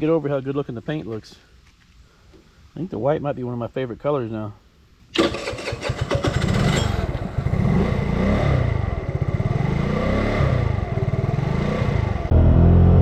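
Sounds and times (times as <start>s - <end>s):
scooter engine revving: 5.2s - 13.0s.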